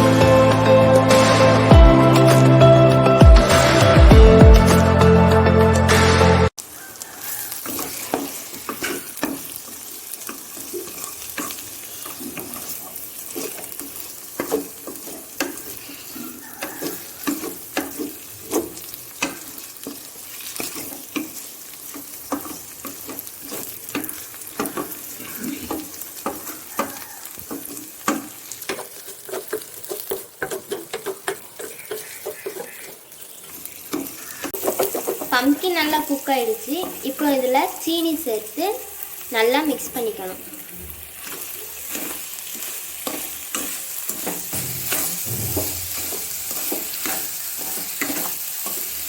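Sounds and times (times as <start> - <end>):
food sizzling in a pan: 6.5 - 49.0
spatula scraping a pan: 6.7 - 35.5, 40.7 - 49.0.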